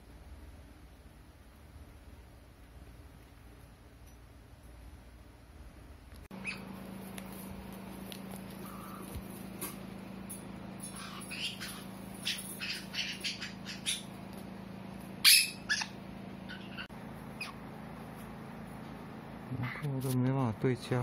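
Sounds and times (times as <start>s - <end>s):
steady low hum: 0.0s - 21.0s
parrot squawks and chirps: 6.4s - 6.7s, 10.8s - 14.1s, 15.2s - 17.6s.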